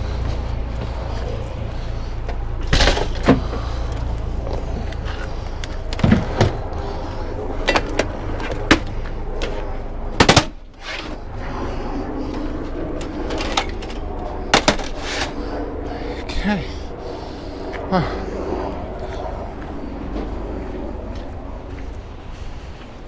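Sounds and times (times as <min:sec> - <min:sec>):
low rumble: 0:00.0 - 0:23.0
equipment knocking and clunking: 0:02.3 - 0:09.6.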